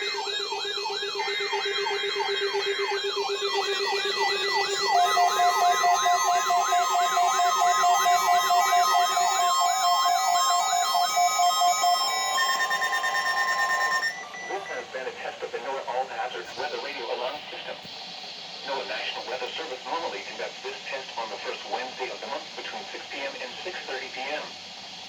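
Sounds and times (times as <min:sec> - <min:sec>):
electronic siren wail: 0:00.0 - 0:14.9
pulsing alert tones: 0:00.0 - 0:14.9.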